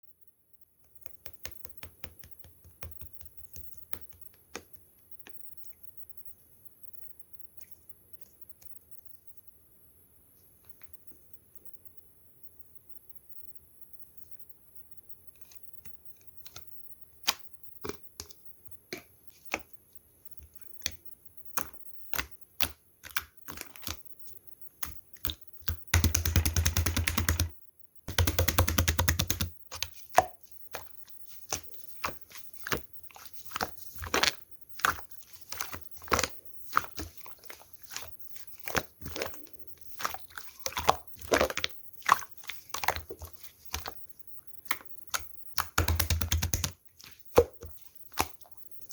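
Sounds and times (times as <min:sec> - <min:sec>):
slime crackling: 0:28.1 - 0:48.9.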